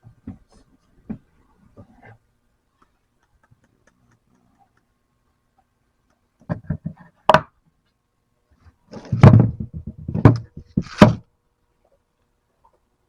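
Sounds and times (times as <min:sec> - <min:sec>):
hard objects knocking: 0:09.0 - 0:11.2.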